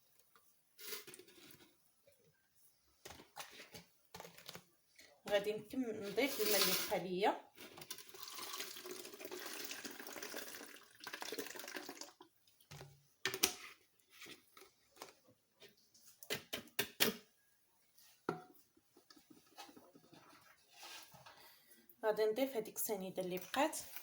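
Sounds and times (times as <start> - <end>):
water pouring: 7.8 - 12.3.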